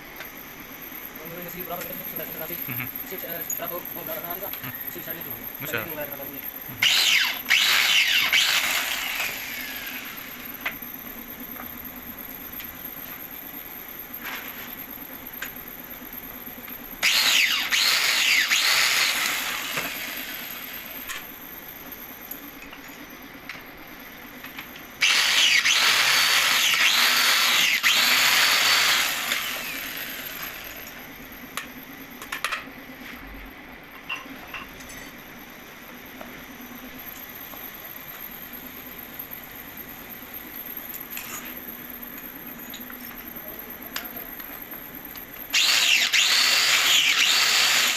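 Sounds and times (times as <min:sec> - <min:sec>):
steady low hum: 0:00.0 - 0:47.4
power tool running: 0:06.7 - 0:10.6, 0:17.0 - 0:21.1, 0:25.0 - 0:30.9, 0:45.5 - 0:47.9.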